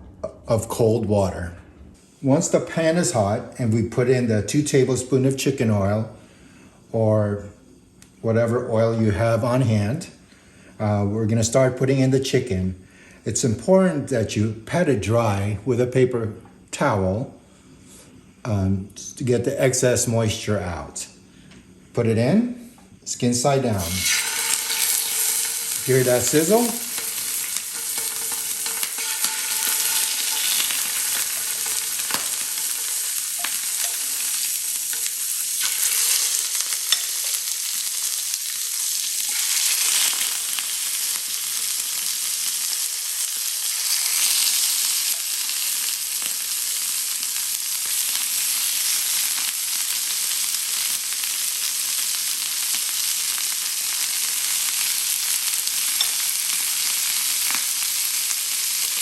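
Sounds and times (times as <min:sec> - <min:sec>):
chicken frying in hot oil: 0:23.8 - 0:59.0
crackling oil spatters: 0:23.8 - 0:59.0.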